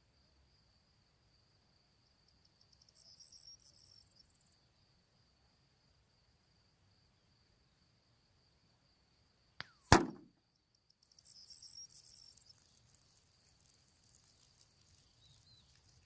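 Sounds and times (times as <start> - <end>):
high insect trill: 0.2 - 9.6, 10.5 - 16.0
air gun shot: 9.6 - 10.3.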